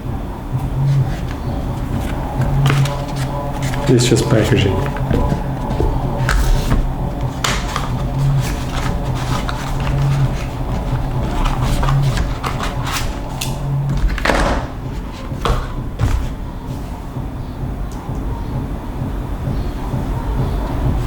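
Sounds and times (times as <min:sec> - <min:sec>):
low hum: 0:00.0 - 0:21.0
plastic packaging rustling: 0:00.7 - 0:16.4.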